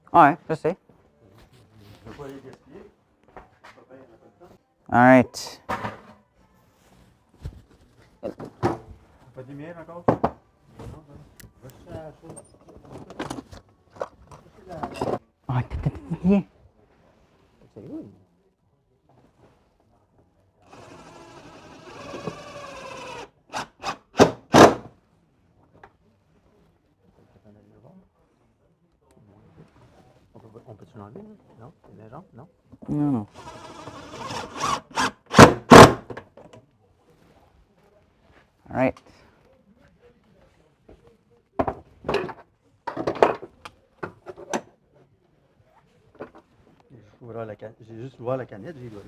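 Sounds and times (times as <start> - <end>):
small motor running: 20.7 - 23.3.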